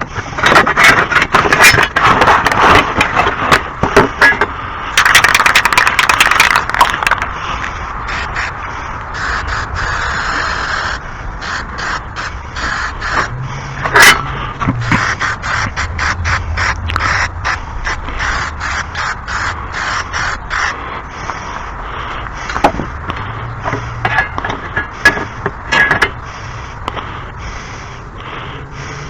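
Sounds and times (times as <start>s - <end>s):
metal scraping: 11.7s - 20.8s.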